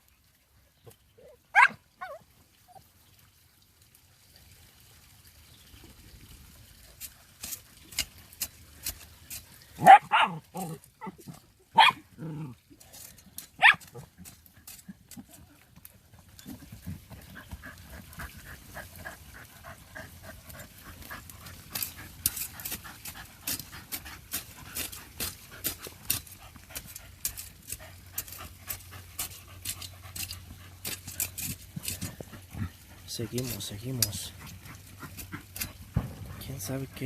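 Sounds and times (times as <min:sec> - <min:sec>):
dog claws scratching dirt: 0:06.9 - 0:37.0
dog panting: 0:16.4 - 0:37.0.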